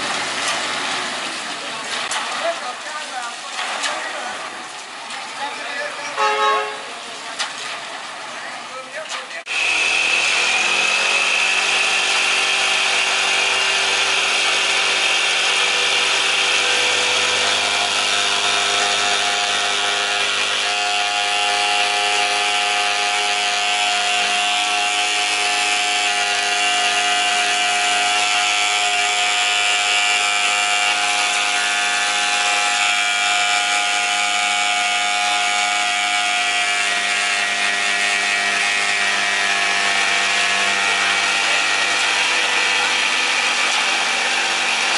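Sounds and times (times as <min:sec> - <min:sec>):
power machine whining: 0:09.5 - 0:44.9.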